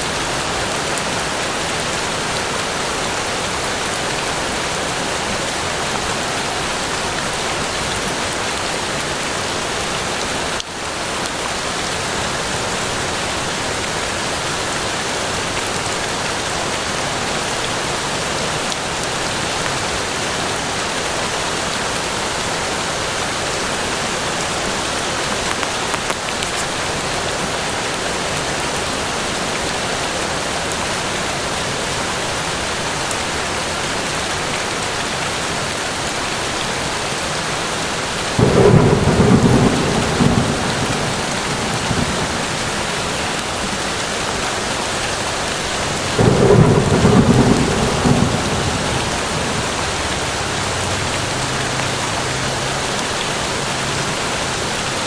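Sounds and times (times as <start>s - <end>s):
louder raindrops: 0.0s - 55.0s
steady rain hiss: 0.0s - 55.0s.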